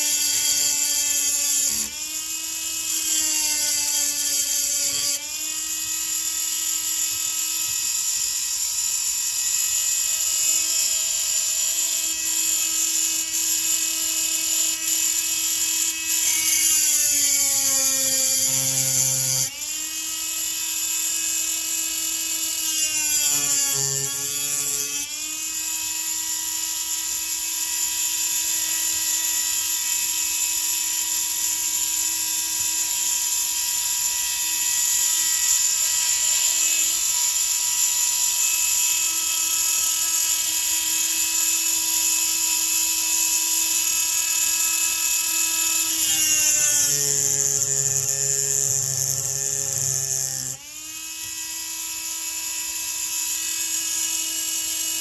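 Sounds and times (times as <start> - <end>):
rotary grinding tool whining: 0.0 - 55.0
bit grinding into metal: 2.9 - 5.2, 14.6 - 19.5, 22.6 - 25.0, 44.6 - 50.6.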